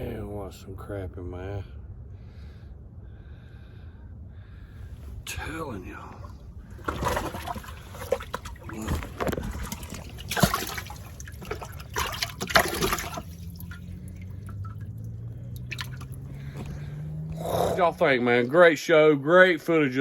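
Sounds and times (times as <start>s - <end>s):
low steady hum: 0.0s - 19.8s
water splashing and trickling: 5.3s - 18.8s.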